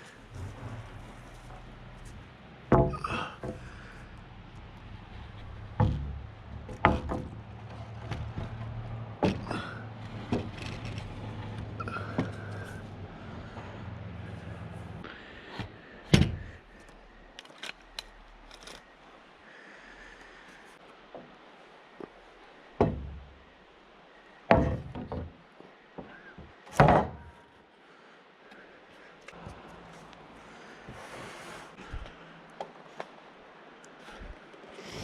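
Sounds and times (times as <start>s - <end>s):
sharp knocks and clanks: 2.7s - 3.9s, 5.4s - 11.0s, 22.8s - 23.4s, 24.5s - 25.4s, 26.0s - 27.4s.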